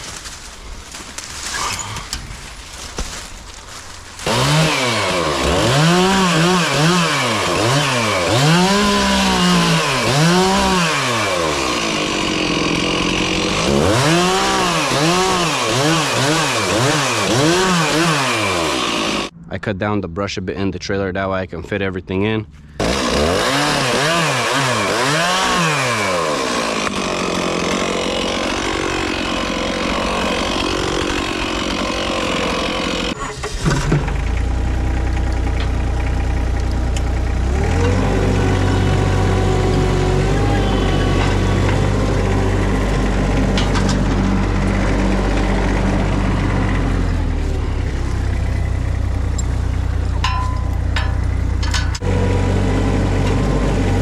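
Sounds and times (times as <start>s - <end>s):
chainsaw revving: 4.2s - 19.3s, 22.7s - 35.3s, 36.9s - 47.6s
machine engine running: 25.0s - 54.0s.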